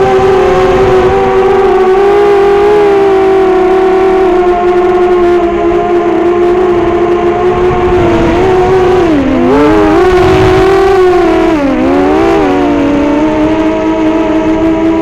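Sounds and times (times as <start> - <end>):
drone motors whining: 0.0 - 15.0.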